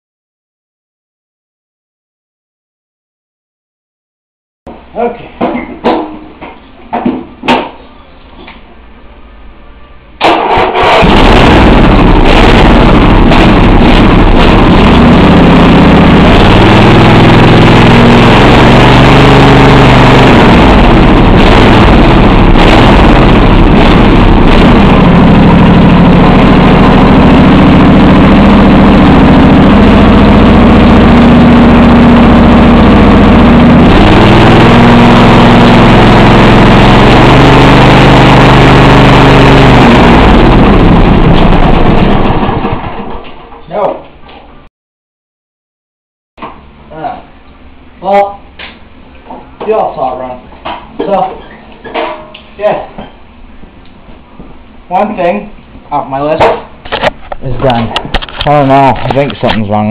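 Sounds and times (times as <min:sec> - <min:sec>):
riding mower engine running: 0:10.2 - 0:43.4.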